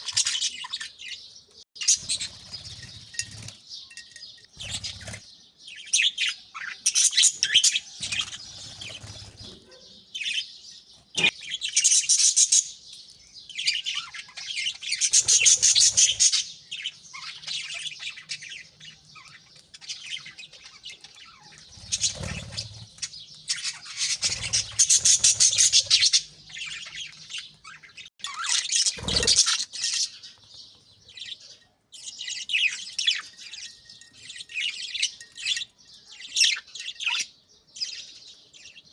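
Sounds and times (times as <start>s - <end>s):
budgerigars chattering and chirping: 0.0s - 38.9s.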